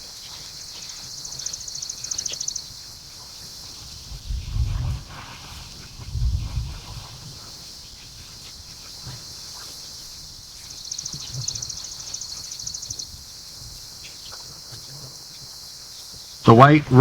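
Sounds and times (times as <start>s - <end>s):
insects droning: 0.0s - 17.0s.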